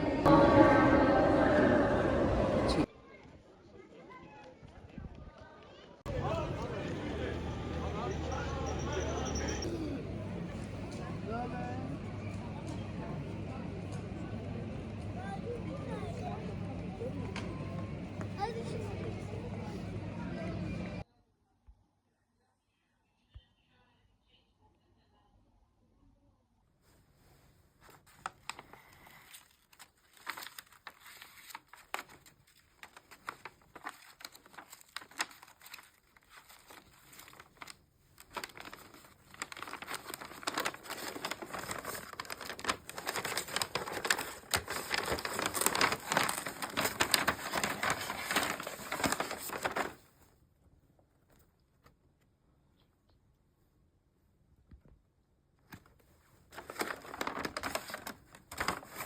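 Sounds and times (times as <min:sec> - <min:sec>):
dense crinkling and crackling: 0:27.8 - 0:50.3, 0:55.7 - 0:59.0.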